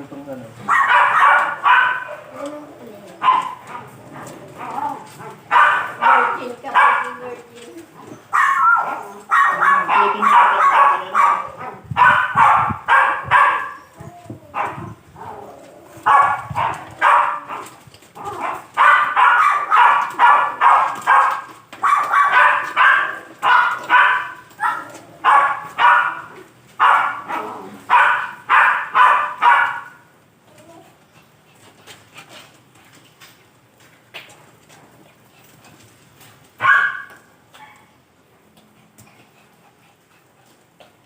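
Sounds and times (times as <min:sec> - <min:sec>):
dog barking in high yelps: 0:00.7 - 0:02.4, 0:03.2 - 0:07.3, 0:08.0 - 0:30.1, 0:36.6 - 0:37.9.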